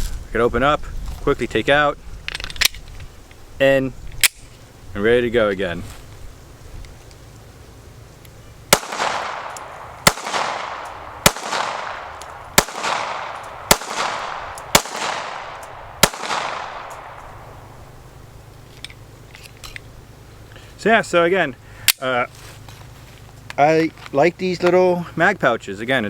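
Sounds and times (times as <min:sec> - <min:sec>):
pistol shots with echo: 0:08.7 - 0:17.8.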